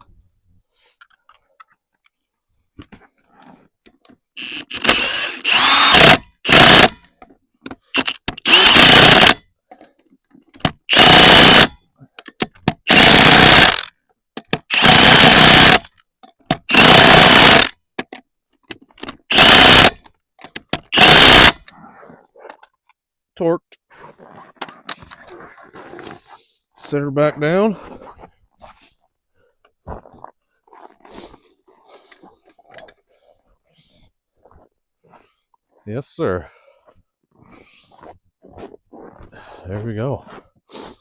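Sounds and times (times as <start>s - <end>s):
impact wrench bursts: 4.4s - 7.1s, 7.9s - 9.4s, 10.6s - 11.8s, 12.8s - 13.9s, 14.6s - 15.9s, 16.5s - 17.8s, 19.2s - 20.0s, 20.8s - 21.7s.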